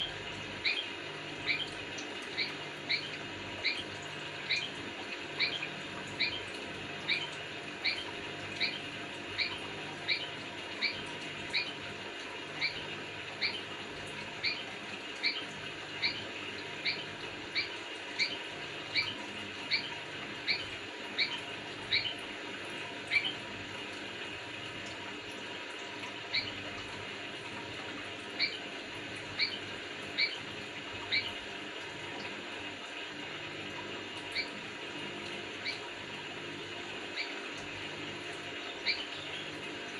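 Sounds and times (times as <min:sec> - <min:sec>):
bird chirping: 0:00.0 - 0:04.8, 0:05.4 - 0:11.8, 0:12.6 - 0:13.7, 0:14.4 - 0:22.2, 0:23.1 - 0:23.4, 0:26.3 - 0:26.6, 0:28.4 - 0:28.6, 0:29.4 - 0:30.4, 0:31.1 - 0:31.4, 0:35.6 - 0:35.8, 0:38.6 - 0:39.6.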